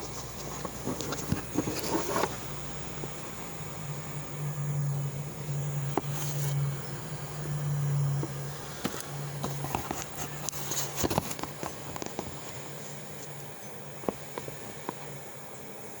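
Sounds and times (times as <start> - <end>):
handling clicks and taps: 0.0 - 2.5, 8.1 - 12.4
steady low hum: 0.0 - 16.0.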